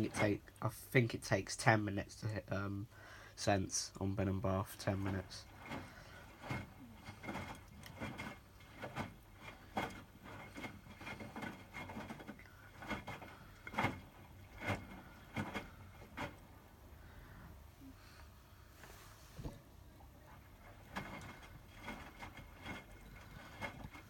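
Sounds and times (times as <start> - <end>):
washing machine drum tumbling: 3.7 - 17.0, 19.4 - 24.0
wet laundry thudding and sloshing: 4.7 - 16.7.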